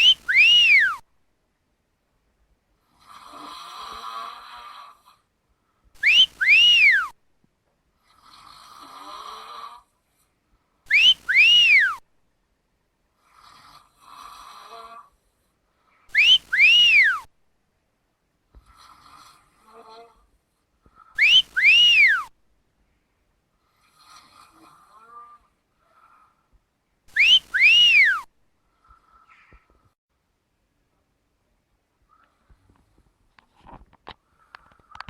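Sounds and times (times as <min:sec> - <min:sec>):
person snoring with whistle: 0:00.0 - 0:01.0, 0:03.0 - 0:05.0, 0:06.0 - 0:07.2, 0:08.3 - 0:09.8, 0:10.9 - 0:12.0, 0:16.1 - 0:17.3, 0:21.2 - 0:22.3, 0:27.1 - 0:28.3.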